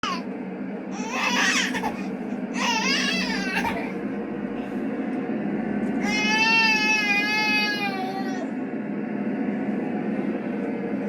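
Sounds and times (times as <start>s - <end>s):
baby whining cries: 0.0s - 0.2s, 0.9s - 4.0s, 6.0s - 8.5s
steady low hum: 0.0s - 11.0s.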